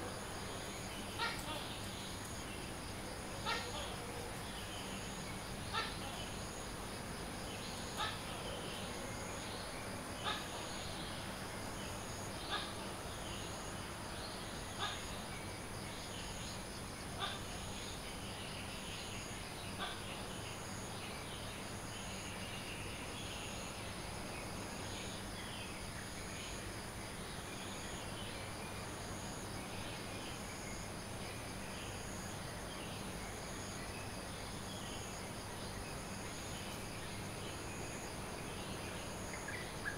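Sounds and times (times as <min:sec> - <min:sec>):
insect drone: 0:00.0 - 0:39.9
gecko calling: 0:01.1 - 0:02.2, 0:03.4 - 0:04.0, 0:05.7 - 0:06.6.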